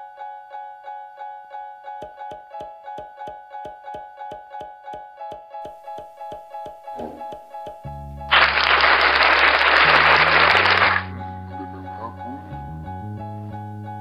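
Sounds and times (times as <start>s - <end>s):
keyboard playing repeating notes: 2.0s - 8.2s.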